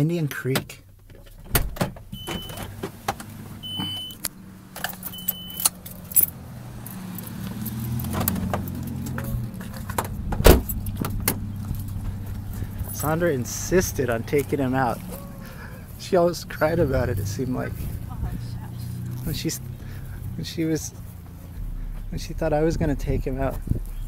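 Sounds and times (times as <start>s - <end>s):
low car hum: 0.5s - 24.0s
short high beeps: 3.6s - 4.2s, 5.1s - 5.7s
keys jangling: 4.8s - 8.1s
loud thump: 10.0s - 11.4s.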